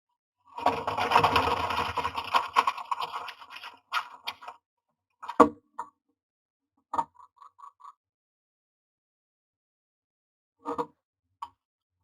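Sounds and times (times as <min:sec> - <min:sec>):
bird scratching in wooden nest box: 0:00.7 - 0:04.5.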